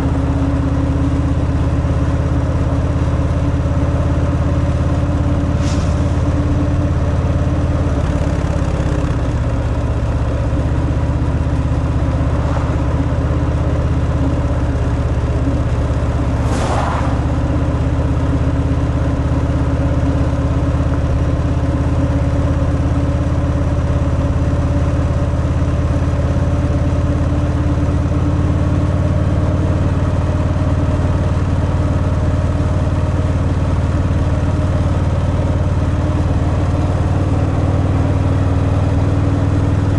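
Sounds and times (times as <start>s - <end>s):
motorcycle engine running: 0.0s - 39.9s
short whoosh: 11.8s - 18.4s.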